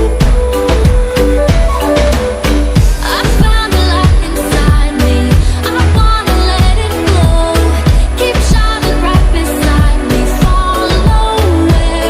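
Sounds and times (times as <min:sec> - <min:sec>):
person singing: 0:00.0 - 0:12.0
pop song with bass beat: 0:00.0 - 0:12.0.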